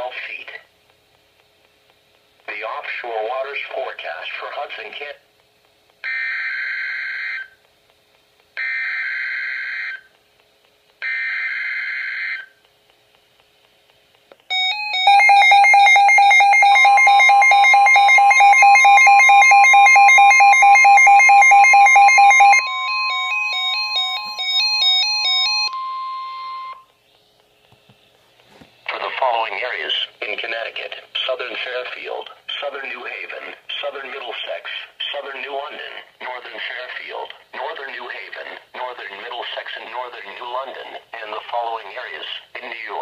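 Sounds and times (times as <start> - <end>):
fast-pulsing electronic alarm: 6.0 - 7.6, 8.6 - 10.1, 11.0 - 12.6, 14.5 - 26.9
steady warning alarm tone: 6.0 - 7.6, 8.6 - 10.2, 11.0 - 12.6, 14.5 - 27.0.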